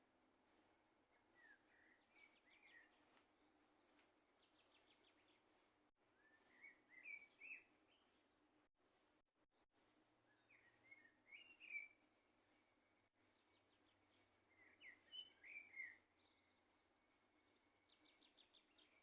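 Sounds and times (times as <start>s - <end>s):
songbirds singing: 0.4s - 19.0s.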